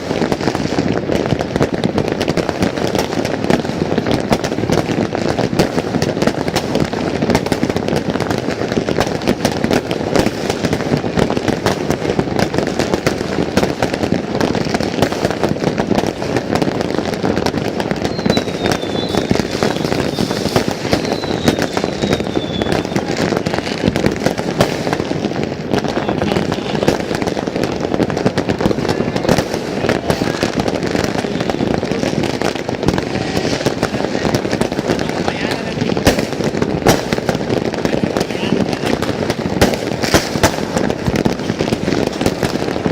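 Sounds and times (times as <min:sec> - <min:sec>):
fireworks crackling and banging: 0:00.0 - 0:42.9
falling firework whistles: 0:17.9 - 0:23.5.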